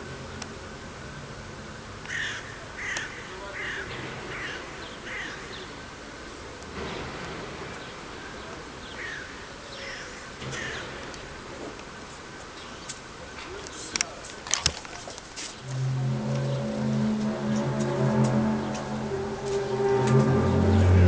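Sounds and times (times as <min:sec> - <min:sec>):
bird cawing: 0:02.1 - 0:05.6.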